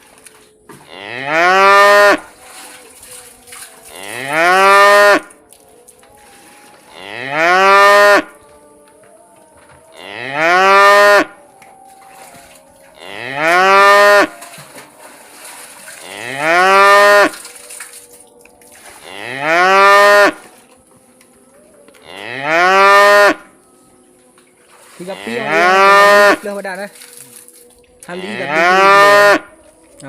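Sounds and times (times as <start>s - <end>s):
cow mooing: 0.8s - 2.3s, 3.9s - 5.3s, 6.9s - 8.3s, 9.9s - 11.4s, 13.0s - 14.4s, 16.0s - 17.4s, 19.0s - 20.5s, 22.0s - 23.5s, 25.0s - 26.4s, 28.0s - 29.6s.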